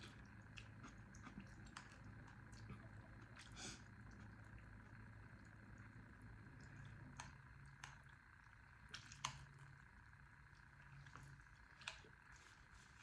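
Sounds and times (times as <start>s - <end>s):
quiet chewing: 0.0s - 5.6s, 10.5s - 13.0s.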